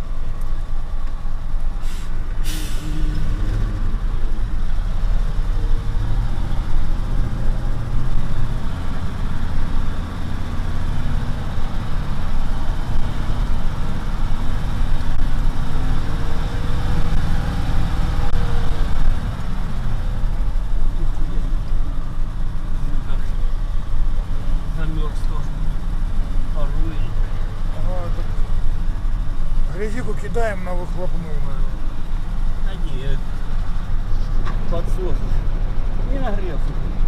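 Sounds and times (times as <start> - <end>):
vehicle engine driving: 0.0 - 37.0
short hiss: 1.8 - 3.2.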